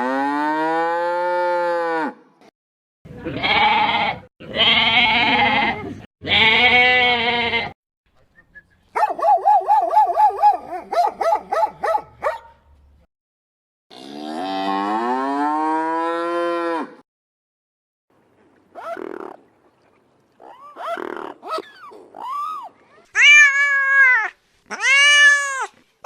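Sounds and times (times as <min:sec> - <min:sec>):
cow mooing: 0:13.9 - 0:17.0.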